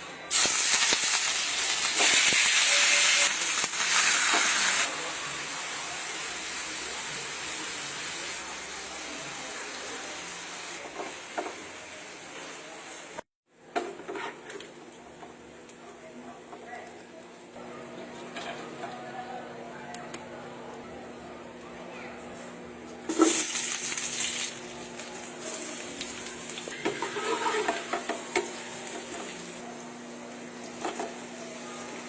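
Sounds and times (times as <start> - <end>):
food sizzling in hot oil: 0.3 - 12.2, 23.1 - 29.6.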